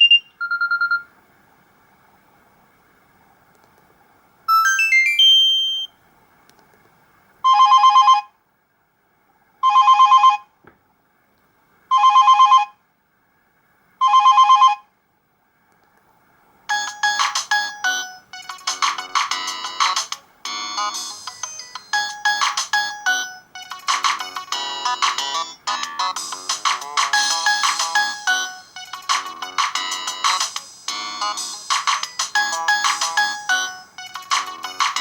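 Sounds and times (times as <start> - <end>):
electronic ringtone melody: 0.0 - 1.0, 4.5 - 5.9, 16.7 - 35.0
rising run of beeps: 0.0 - 1.1, 4.5 - 5.9.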